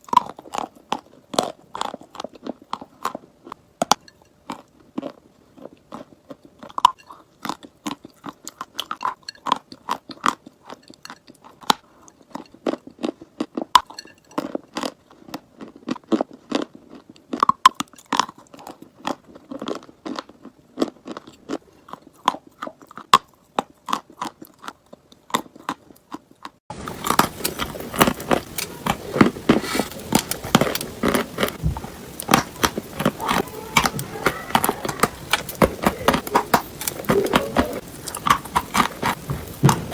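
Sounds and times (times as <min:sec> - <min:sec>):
chalk being chewed: 0:17.8 - 0:39.9
background hiss: 0:26.7 - 0:39.9.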